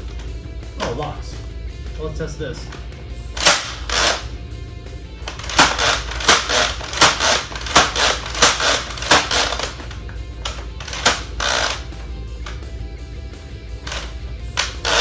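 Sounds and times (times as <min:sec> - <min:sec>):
short rattle: 0:02.6 - 0:15.0
toy blaster snapping: 0:02.7 - 0:04.3, 0:05.2 - 0:12.7, 0:13.8 - 0:15.0.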